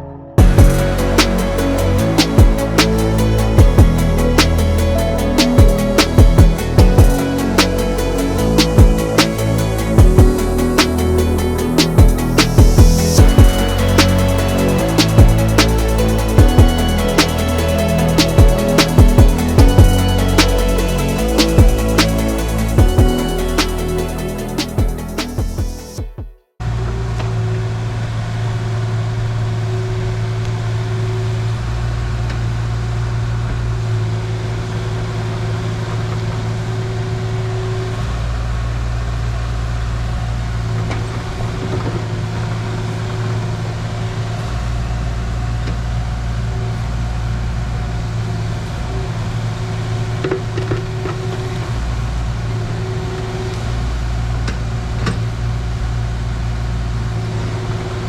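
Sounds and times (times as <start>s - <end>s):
excavator diesel engine running: 0.4s - 25.9s.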